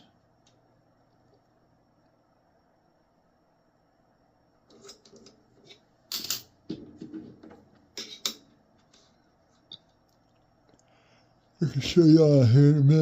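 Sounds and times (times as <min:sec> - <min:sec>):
coins clicking: 0:06.1 - 0:06.5.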